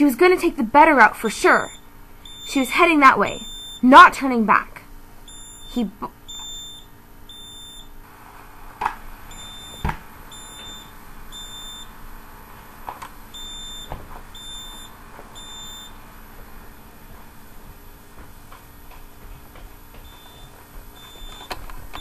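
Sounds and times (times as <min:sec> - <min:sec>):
smoke alarm beeping: 0:01.4 - 0:04.0, 0:05.2 - 0:08.0, 0:09.3 - 0:12.0, 0:13.3 - 0:16.0, 0:20.0 - 0:22.0.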